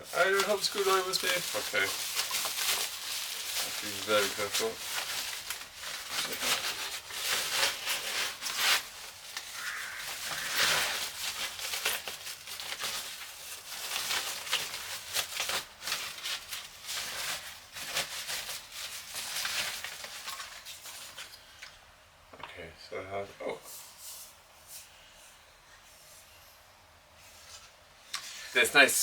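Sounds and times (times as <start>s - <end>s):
packaging rustling and crinkling: 0.0s - 21.4s.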